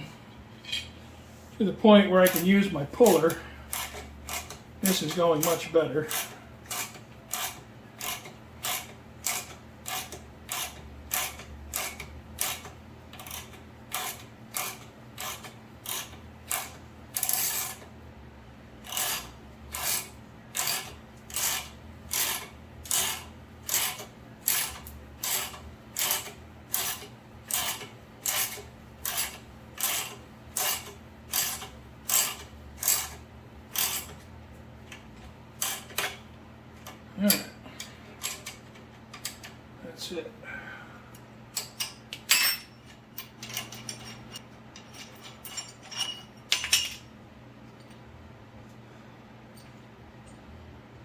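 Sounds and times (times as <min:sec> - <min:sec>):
ratchet wrench clicking: 0:03.7 - 0:17.8, 0:18.9 - 0:33.2.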